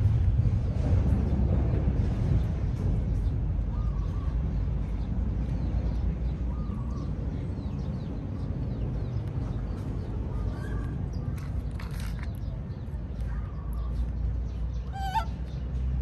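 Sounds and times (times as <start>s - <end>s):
steady low rumble: 0.0s - 16.0s
faint bird calls: 14.7s - 15.7s.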